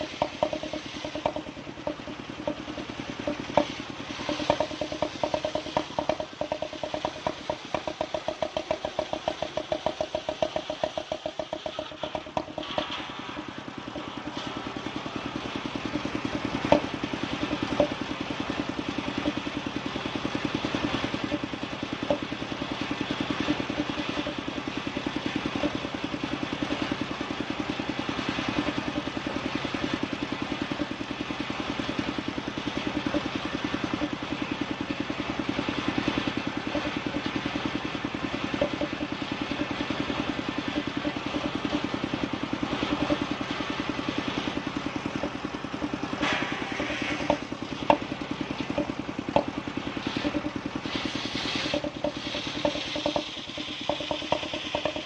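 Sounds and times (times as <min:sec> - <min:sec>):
sharp knocks: 0:00.0 - 0:14.4, 0:15.9 - 0:18.0, 0:46.2 - 0:48.1, 0:50.1 - 0:55.0
sawing machine engine running: 0:00.0 - 0:55.0.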